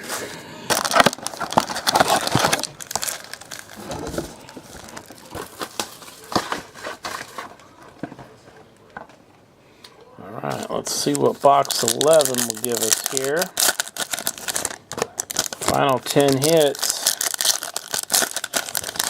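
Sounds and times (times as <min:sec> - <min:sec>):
plastic wrapping crinkling: 0:00.7 - 0:08.0, 0:10.5 - 0:19.0.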